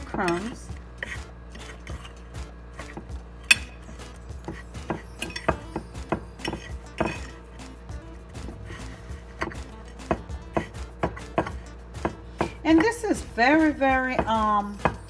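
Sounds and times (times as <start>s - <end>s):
metal fork clinking against a dish: 0.0s - 7.8s.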